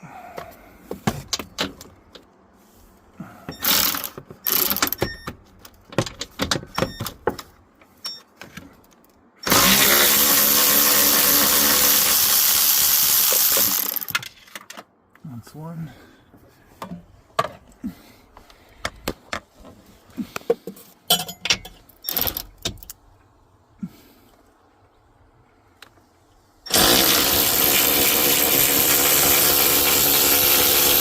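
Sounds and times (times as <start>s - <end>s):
tool clicks and rattles: 3.5s - 7.5s, 8.1s - 14.9s, 26.7s - 31.0s
power driver running: 9.5s - 14.1s, 26.7s - 31.0s.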